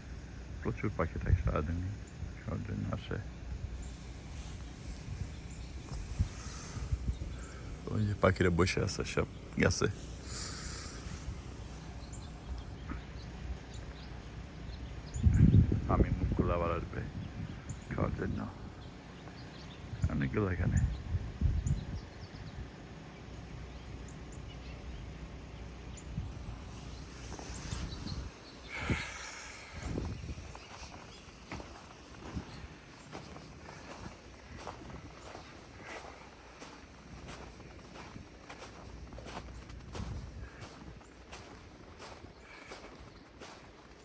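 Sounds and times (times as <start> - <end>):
songbirds chirping: 0.0 - 44.0
steady low rumble: 0.0 - 44.0
footsteps crunching through snow: 26.4 - 44.0.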